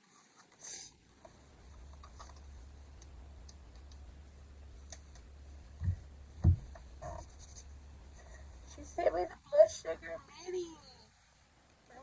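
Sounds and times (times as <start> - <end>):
dull thumps of items set down: 5.8 - 7.2.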